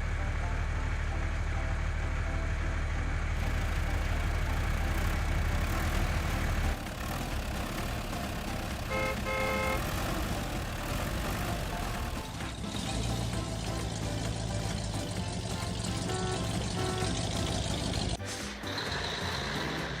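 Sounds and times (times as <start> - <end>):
vehicle engine running: 0.0 - 20.0
car horn toots: 8.2 - 12.4, 15.5 - 18.2.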